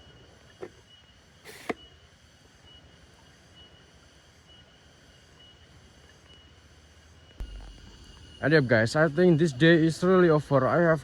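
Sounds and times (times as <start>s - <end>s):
outdoor background: 0.0s - 11.0s.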